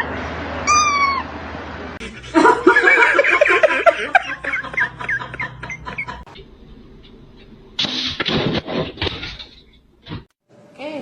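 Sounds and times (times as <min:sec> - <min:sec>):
cat chirping: 0:00.6 - 0:01.3.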